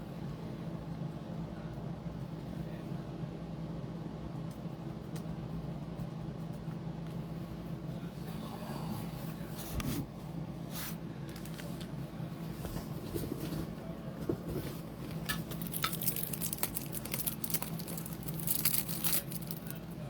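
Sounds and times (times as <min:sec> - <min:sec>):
steady low hum: 0:00.0 - 0:20.0
things rustling and clicking on table: 0:12.6 - 0:19.8.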